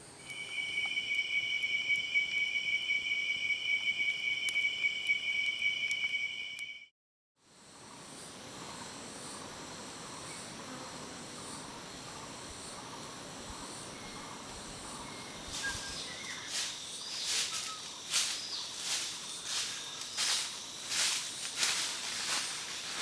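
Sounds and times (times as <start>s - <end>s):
high insect buzz: 0.0s - 6.9s, 7.6s - 23.0s
soft chirping: 0.2s - 6.8s
leaves rustling: 15.3s - 23.0s.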